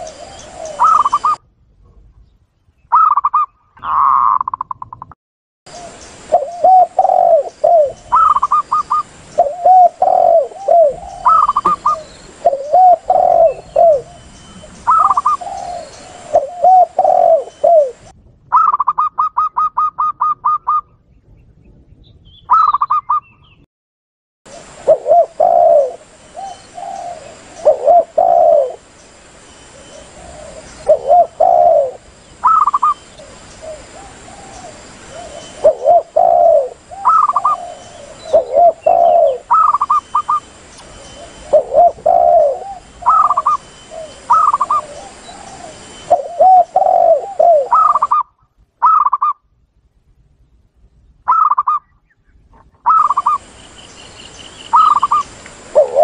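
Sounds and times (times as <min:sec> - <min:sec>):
doves cooing: 0:00.0 - 0:01.4, 0:02.9 - 0:04.8, 0:05.7 - 0:20.8, 0:24.5 - 0:28.9, 0:29.7 - 0:49.4, 0:52.6 - 0:53.4, 0:54.7 - 0:56.0
faint background hiss: 0:00.0 - 0:03.0, 0:05.7 - 0:19.2, 0:24.5 - 0:56.0.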